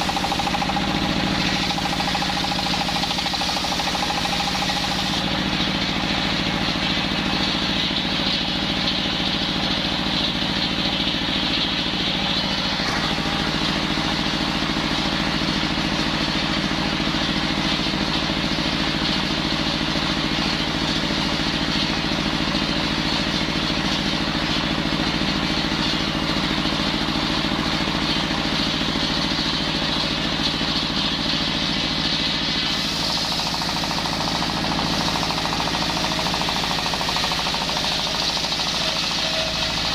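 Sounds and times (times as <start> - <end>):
circular saw cutting wood: 0.0 - 11.2, 30.6 - 39.9.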